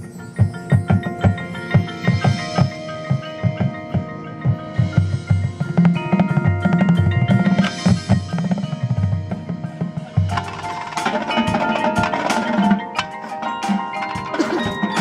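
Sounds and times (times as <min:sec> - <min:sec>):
drums playing a rhythm: 0:00.0 - 0:15.0
mallet percussion notes: 0:00.0 - 0:15.0.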